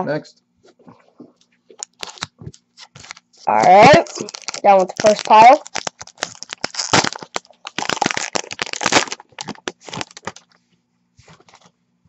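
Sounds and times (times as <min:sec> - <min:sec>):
trading cards crackling and tapping: 0:01.5 - 0:10.5.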